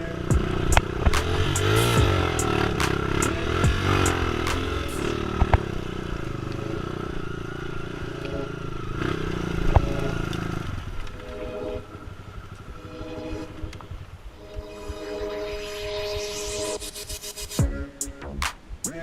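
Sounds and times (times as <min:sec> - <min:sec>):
motorcycle engine revving: 0:00.0 - 0:14.2.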